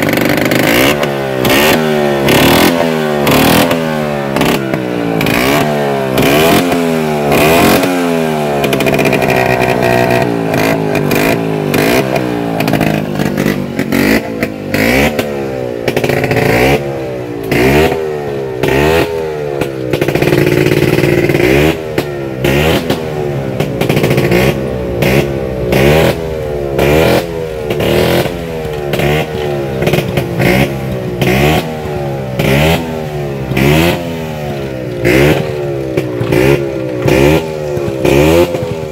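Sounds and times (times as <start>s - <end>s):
scooter engine revving: 0.0s - 38.9s.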